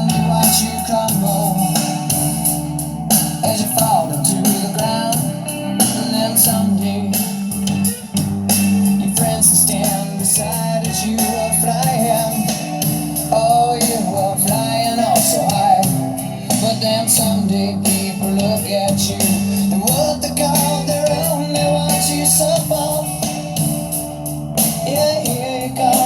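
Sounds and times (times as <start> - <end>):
rock song over speakers: 0.0 - 26.0.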